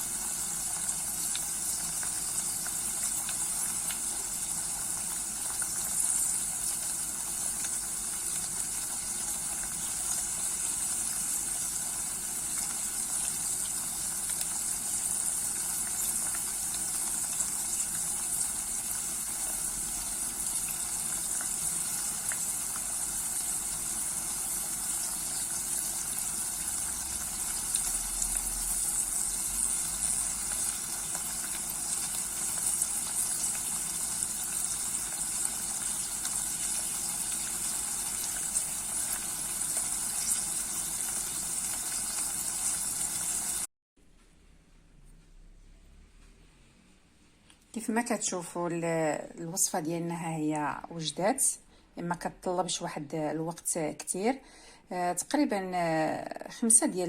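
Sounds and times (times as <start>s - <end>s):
syrup simmering with sizzling hiss: 0.0s - 43.7s.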